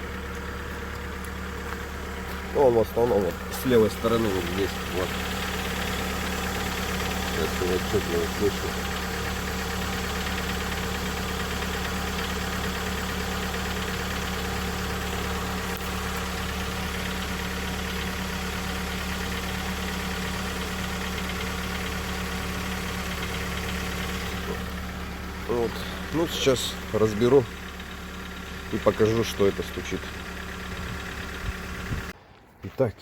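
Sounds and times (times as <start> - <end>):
car engine idling with knock: 0.0 - 32.2.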